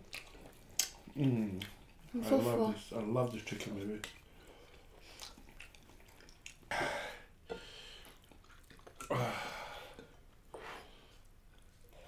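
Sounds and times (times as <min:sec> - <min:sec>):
wet mouth chewing clicks: 0:00.0 - 0:02.1, 0:05.0 - 0:06.7, 0:08.2 - 0:09.1.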